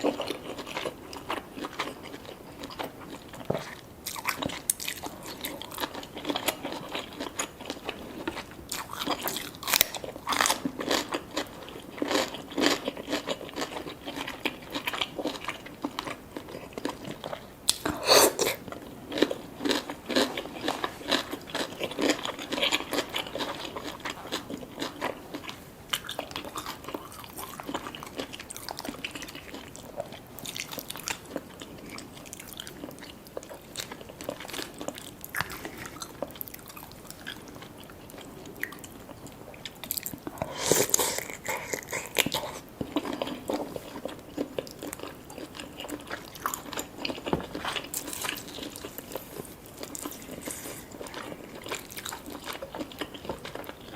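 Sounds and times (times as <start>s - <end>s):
person biting and chewing: 39.9s - 49.2s.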